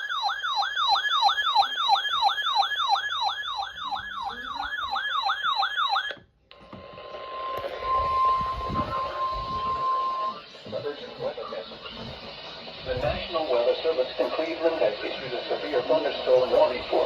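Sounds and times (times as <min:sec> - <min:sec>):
electronic siren yelping: 0:00.0 - 0:06.2, 0:07.2 - 0:10.4
steady hissy alarm tone: 0:06.8 - 0:17.0.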